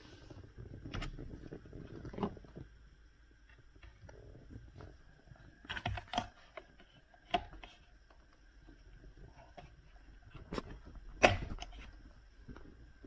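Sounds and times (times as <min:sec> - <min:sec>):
filter housing clicks and knocks: 0:10.5 - 0:12.0.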